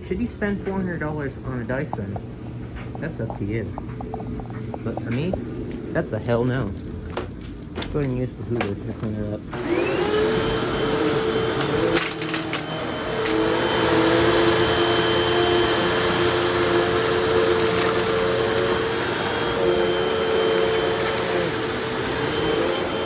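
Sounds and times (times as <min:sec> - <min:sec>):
vacuum cleaner running: 0:09.5 - 0:23.0.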